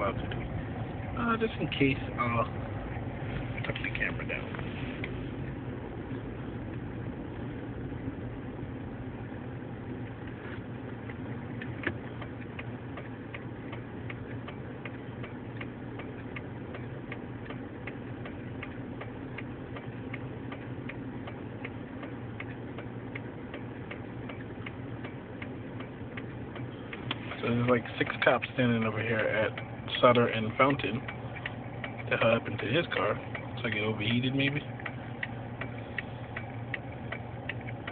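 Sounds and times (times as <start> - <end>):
car engine hum: 0.0 - 37.9
indicator relay clicking: 11.1 - 37.9.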